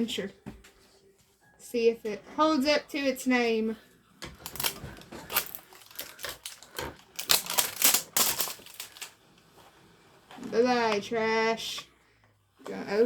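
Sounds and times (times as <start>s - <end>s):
packaging tearing and crinkling: 4.4s - 9.2s.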